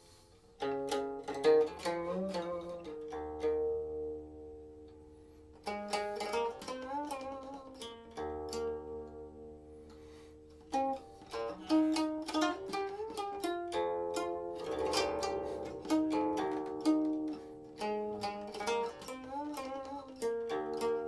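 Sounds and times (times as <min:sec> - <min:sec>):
plucked zither notes: 0:00.0 - 0:21.0.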